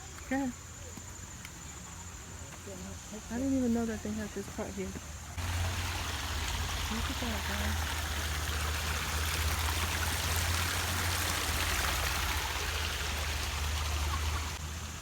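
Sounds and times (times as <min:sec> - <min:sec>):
running water rushing: 0:03.7 - 0:15.0.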